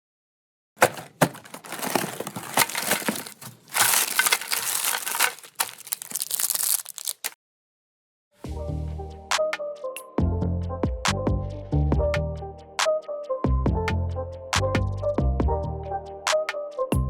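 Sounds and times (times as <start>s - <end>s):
meat grinder crunching sweets: 0.8s - 7.4s
sharp cracks: 3.6s - 7.4s.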